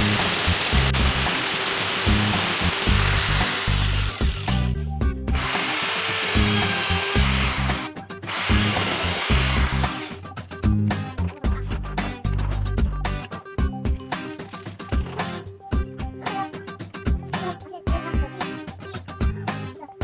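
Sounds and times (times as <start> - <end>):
power tool running: 0.0 - 4.8, 5.4 - 10.2
background music with bass: 0.0 - 20.0.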